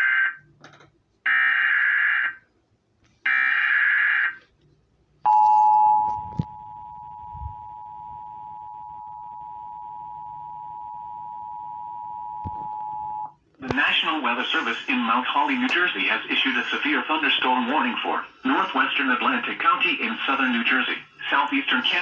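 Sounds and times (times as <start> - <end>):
two-tone alarm: 5.3 - 13.3.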